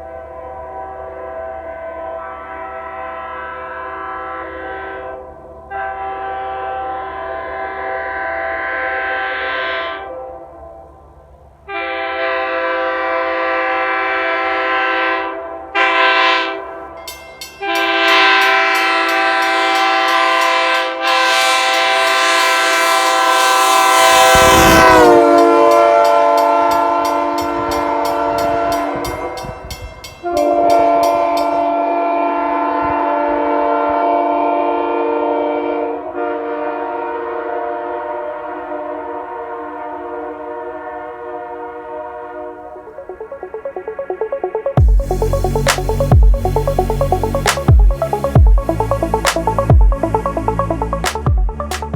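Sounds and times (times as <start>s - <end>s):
train horn chord blasts: 0.0s - 51.0s.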